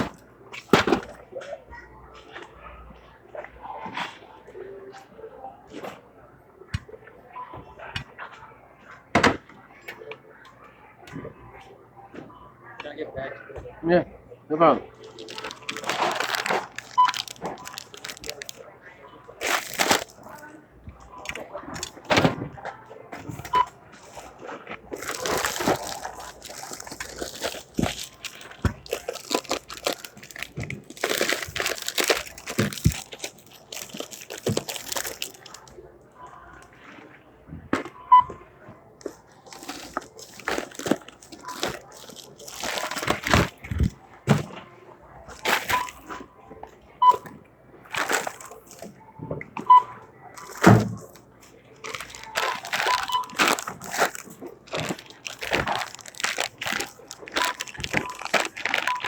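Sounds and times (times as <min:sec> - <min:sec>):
plastic bags rustling: 0:14.8 - 0:20.6, 0:23.2 - 0:35.8, 0:39.0 - 0:44.6, 0:45.3 - 0:46.2, 0:47.8 - 0:49.0, 0:50.3 - 0:59.0
register beeps: 0:38.0 - 0:38.4, 0:45.7 - 0:46.3, 0:48.9 - 0:50.1, 0:52.2 - 0:53.4, 0:57.4 - 0:59.0.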